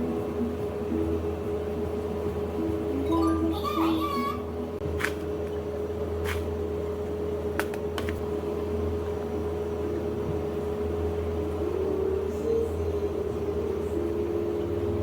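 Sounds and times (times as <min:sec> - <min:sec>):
cafe machinery humming: 0:00.0 - 0:15.0.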